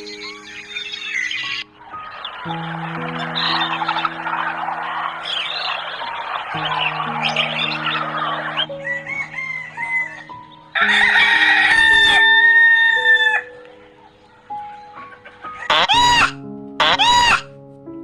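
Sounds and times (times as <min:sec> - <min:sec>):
background music: 0:00.0 - 0:18.0
rooster crowing: 0:07.9 - 0:13.6
loud animal call: 0:15.7 - 0:17.5.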